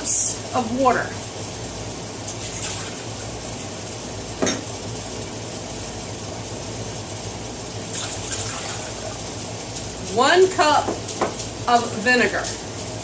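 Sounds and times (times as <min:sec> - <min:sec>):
steady low hum: 0:00.0 - 0:13.0
kitchenware clink: 0:04.4 - 0:04.7.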